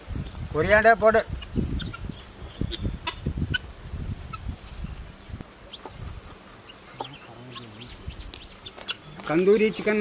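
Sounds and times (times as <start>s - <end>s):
chickens clucking: 0.2s - 10.0s.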